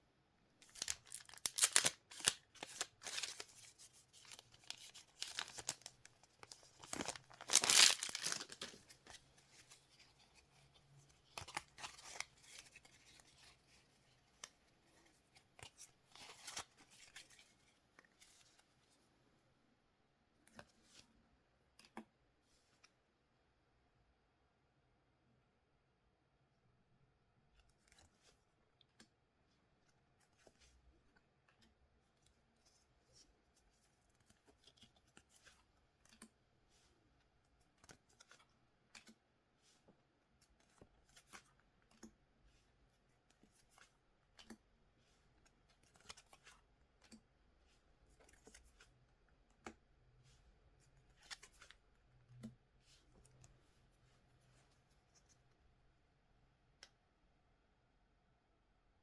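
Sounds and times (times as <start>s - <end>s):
trading cards clicking and rustling: 0.6s - 9.7s.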